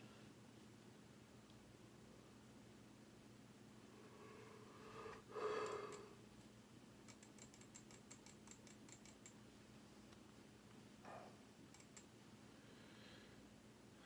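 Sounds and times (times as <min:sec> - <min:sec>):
steady low hum: 0:00.0 - 0:14.0
sleeping person moaning breath: 0:03.9 - 0:06.2.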